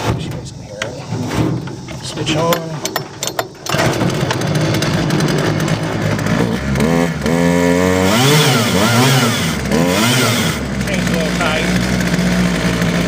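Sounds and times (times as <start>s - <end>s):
chainsaw revving: 3.6s - 13.0s.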